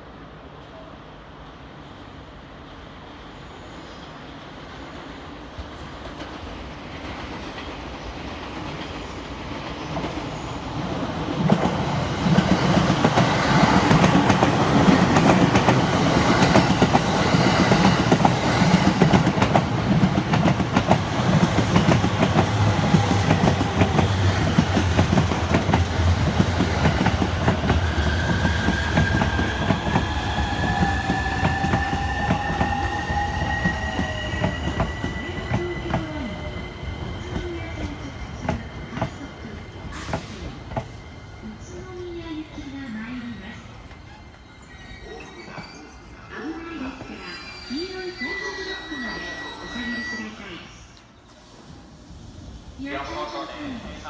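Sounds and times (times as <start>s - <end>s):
train rumble and wheel clatter: 0.0s - 54.0s.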